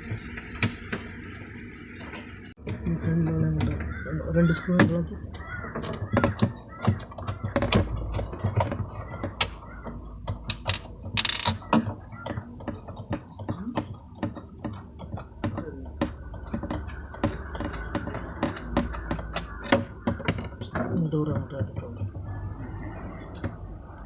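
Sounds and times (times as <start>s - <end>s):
tools clicking and rattling: 5.3s - 22.2s.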